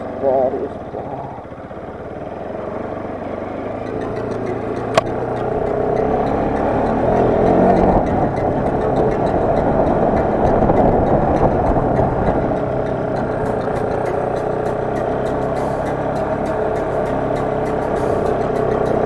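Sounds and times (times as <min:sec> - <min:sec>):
motorcycle engine running: 0:00.0 - 0:19.0
sharp click: 0:03.9 - 0:05.5.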